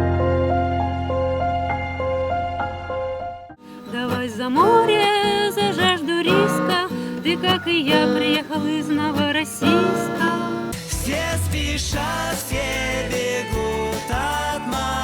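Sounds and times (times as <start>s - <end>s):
soft instrumental music: 0.0s - 15.0s
song with singing voice: 3.8s - 15.0s.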